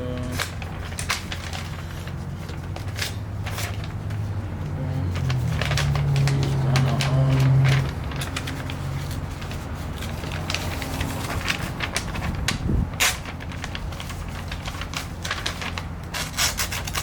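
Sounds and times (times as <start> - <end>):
paper and cardboard rustling: 0.0 - 17.0
wind rumble on microphone: 11.2 - 13.5.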